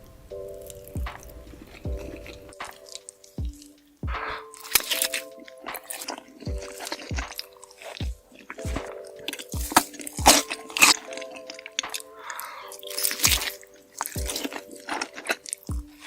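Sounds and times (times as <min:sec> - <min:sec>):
music with thumping beat: 0:01.0 - 0:04.5, 0:05.7 - 0:07.4, 0:08.0 - 0:10.5, 0:13.3 - 0:13.5, 0:14.2 - 0:14.5, 0:15.7 - 0:16.0
crunchy bites and chewing: 0:04.3 - 0:08.6, 0:12.7 - 0:15.7.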